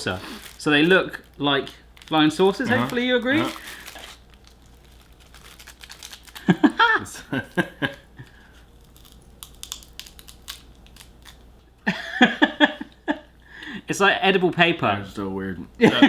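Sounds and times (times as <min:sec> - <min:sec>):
wafer crackling while chewed: 0:00.0 - 0:06.7, 0:07.4 - 0:11.4
person voice sounds: 0:02.1 - 0:03.8.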